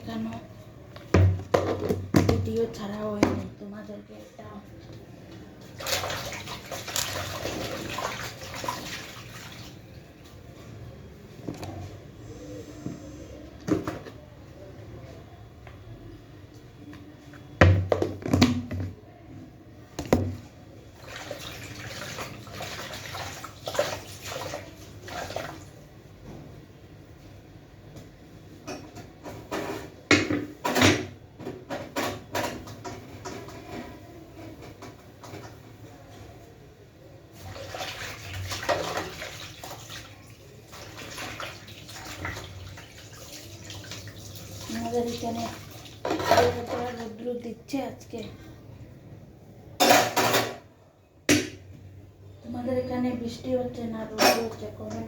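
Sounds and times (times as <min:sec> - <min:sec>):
kitchen items knocking and clattering: 0:01.0 - 0:03.6, 0:17.6 - 0:19.1, 0:20.0 - 0:20.4, 0:28.6 - 0:35.8, 0:44.8 - 0:47.2, 0:49.8 - 0:50.7, 0:54.0 - 0:55.0
water running and splashing: 0:05.7 - 0:09.9, 0:21.0 - 0:25.8, 0:37.4 - 0:47.2.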